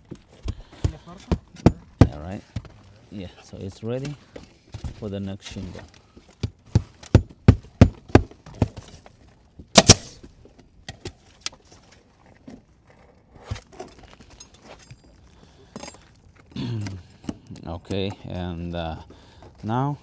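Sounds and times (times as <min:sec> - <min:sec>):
hammer blows on roof: 0:00.7 - 0:02.3, 0:06.7 - 0:08.8.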